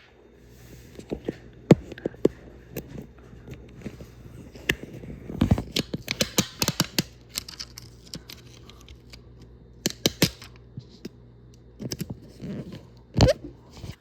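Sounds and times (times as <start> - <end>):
plastic case clicks and rustles: 4.6 - 9.0.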